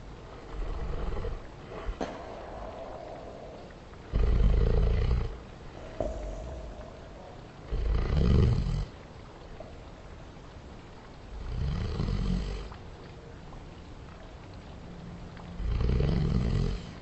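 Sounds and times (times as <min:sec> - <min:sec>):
reverberant slowed snoring: 0:00.2 - 0:09.0, 0:15.6 - 0:17.0.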